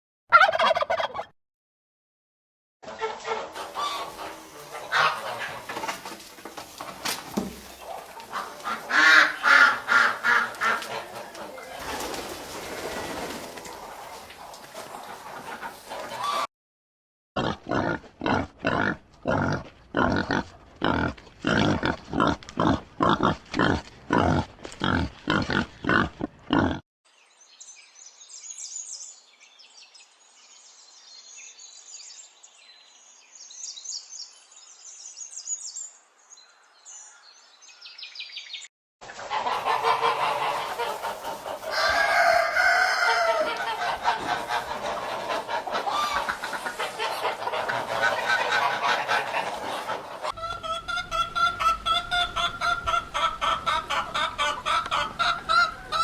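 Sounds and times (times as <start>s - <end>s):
hen clucking: 0.3s - 1.3s, 2.8s - 16.5s, 39.1s - 56.0s
geese honking: 2.9s - 16.5s, 39.2s - 56.0s.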